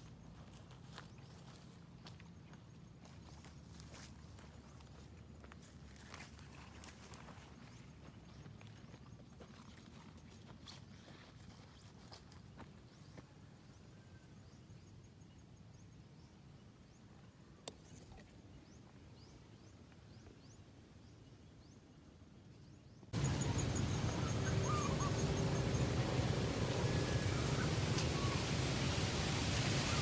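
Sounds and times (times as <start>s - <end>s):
high bird chirps: 23.2s - 28.7s
loud rushing noise: 23.2s - 30.0s.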